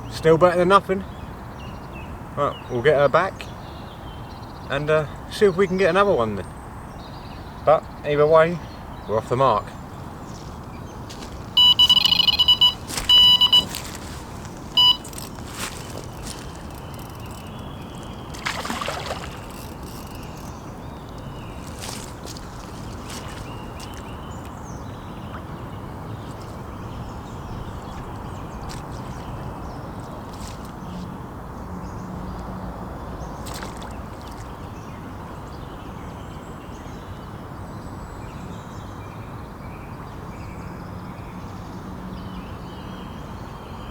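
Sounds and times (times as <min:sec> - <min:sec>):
outdoor background noise: 0:00.0 - 0:43.9
electronic bite alarm beeps: 0:11.6 - 0:14.0, 0:14.8 - 0:15.3.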